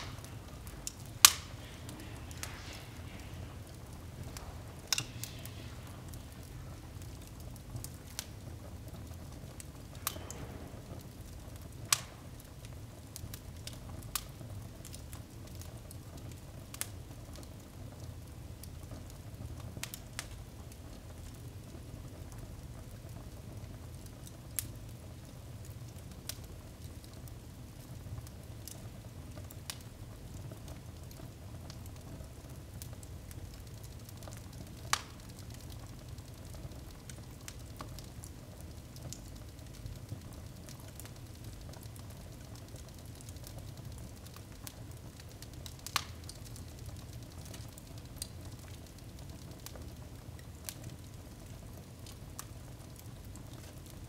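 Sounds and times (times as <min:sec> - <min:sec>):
low steady rumble: 0:00.0 - 0:14.7
wood fire crackling and popping: 0:00.0 - 0:54.0.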